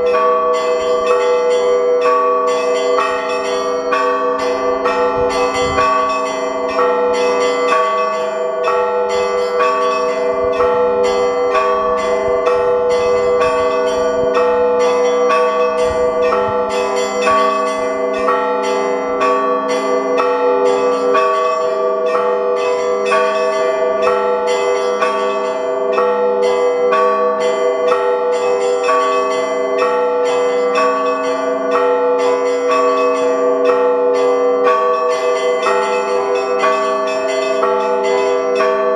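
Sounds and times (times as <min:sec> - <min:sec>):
church bells ringing in a peal: 0:00.0 - 0:38.9.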